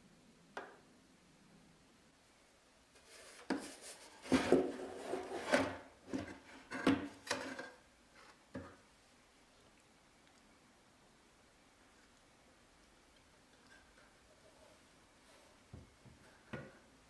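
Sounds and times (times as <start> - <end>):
scraping and rubbing: 3.0 - 6.8.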